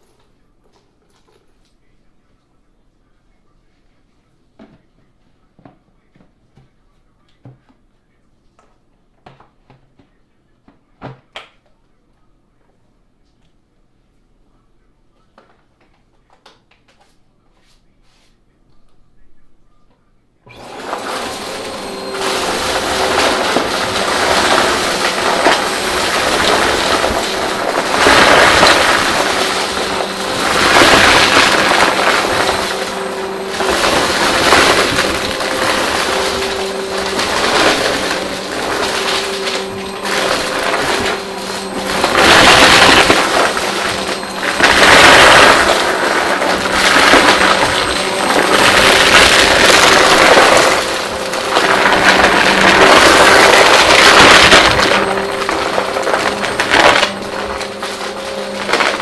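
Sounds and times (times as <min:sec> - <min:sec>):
vacuum cleaner running: 0:20.4 - 0:59.0.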